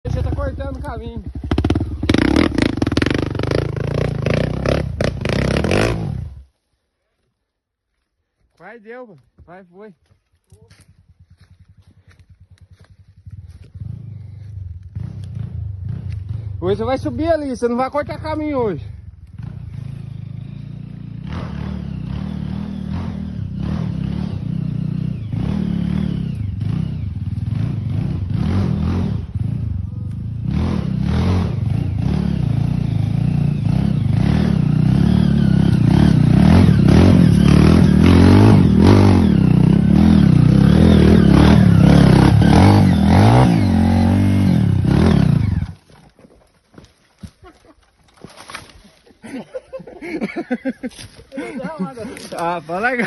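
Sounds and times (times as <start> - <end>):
motorcycle engine revving hard: 0.1 - 6.4, 19.3 - 45.8.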